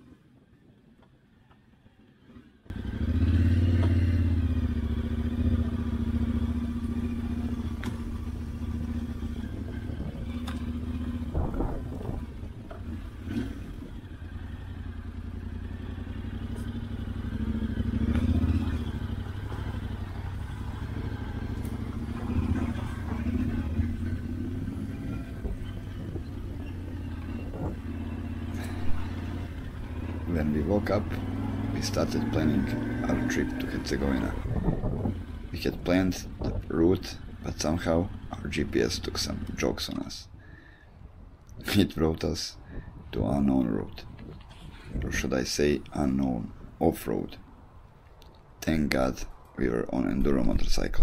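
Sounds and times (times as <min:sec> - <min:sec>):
motorcycle engine running: 0:02.7 - 0:39.7.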